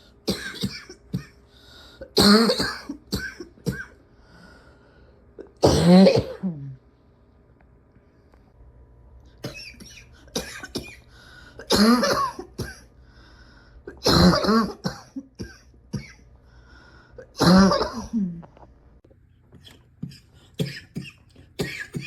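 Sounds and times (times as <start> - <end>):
person coughing hard: 0.2 - 1.4, 2.0 - 4.0, 5.4 - 6.8, 9.4 - 12.9, 13.9 - 16.2, 17.2 - 18.4, 20.0 - 22.0.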